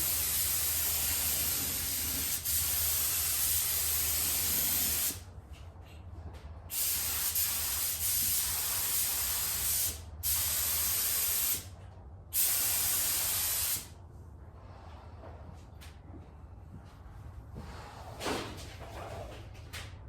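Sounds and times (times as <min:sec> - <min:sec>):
spray paint hissing: 0:00.0 - 0:05.2, 0:06.7 - 0:11.7, 0:12.4 - 0:13.9
steady low hum: 0:11.6 - 0:20.0.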